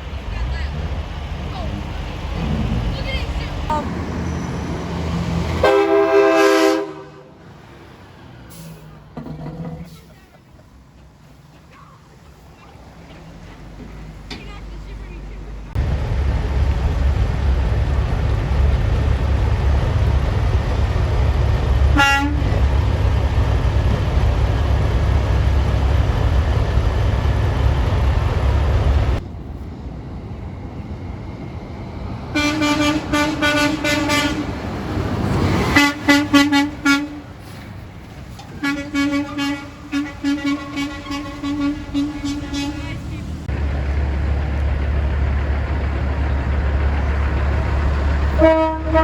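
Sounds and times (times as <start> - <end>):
truck engine rumbling: 0.0 - 49.0
truck horn honks: 5.6 - 7.4, 21.9 - 22.6, 32.4 - 34.5, 35.7 - 37.2, 38.6 - 43.0, 48.3 - 49.0.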